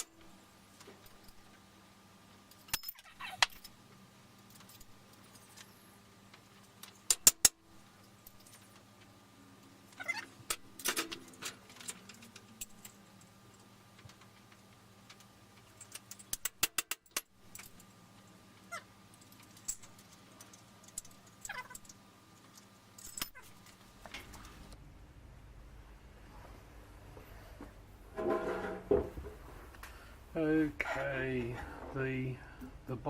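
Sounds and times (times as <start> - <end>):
faint steady hum: 0.0 - 33.0
metal parts clicking and clinking: 2.4 - 3.8, 4.4 - 5.7, 6.3 - 9.1, 9.9 - 24.7.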